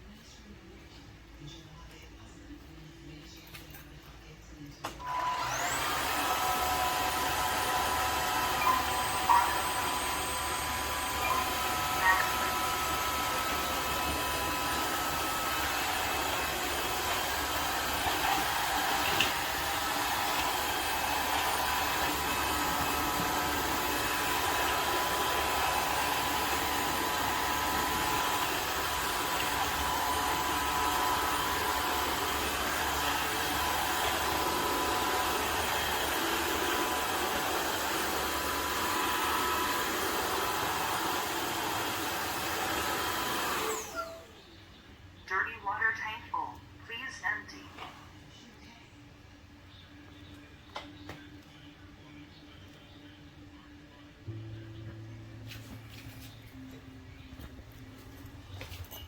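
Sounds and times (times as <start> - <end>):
vacuum mop motor whirring: 4.9 - 44.4.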